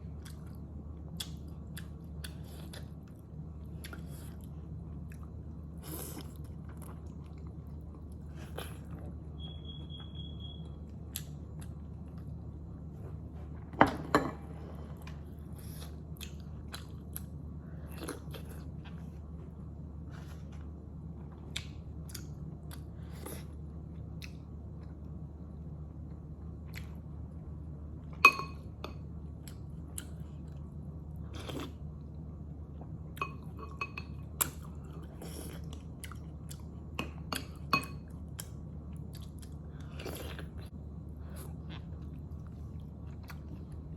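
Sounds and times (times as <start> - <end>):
low steady hum: 0.0 - 43.9.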